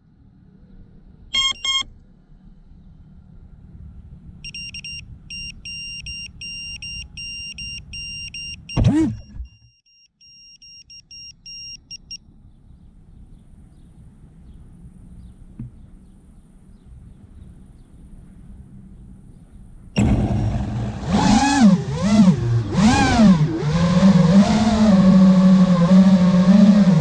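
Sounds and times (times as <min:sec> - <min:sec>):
rapid electronic beeping: 0:01.4 - 0:01.8, 0:04.5 - 0:09.8
low rumble: 0:18.5 - 0:22.7
falling pitch sweep: 0:20.0 - 0:27.0.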